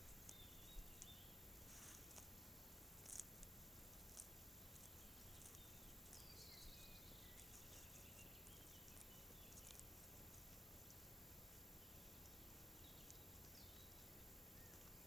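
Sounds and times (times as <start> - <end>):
faint high bird chirps: 4.7 - 9.8, 11.8 - 15.0.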